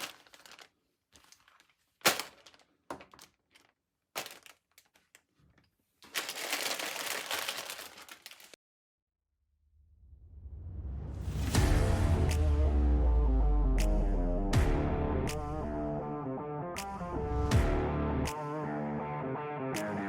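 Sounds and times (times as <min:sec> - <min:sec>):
plastic bags crinkling: 0:00.0 - 0:08.6.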